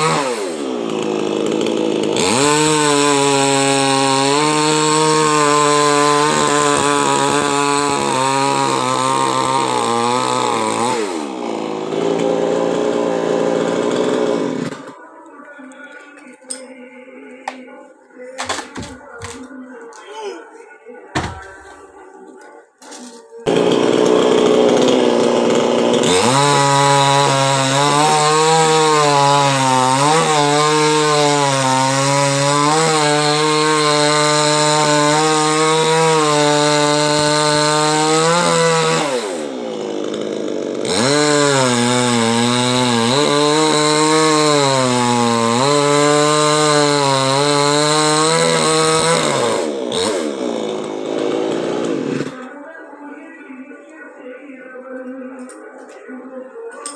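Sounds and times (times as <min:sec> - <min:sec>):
chainsaw cutting wood: 0:00.0 - 0:15.0, 0:22.8 - 0:52.5.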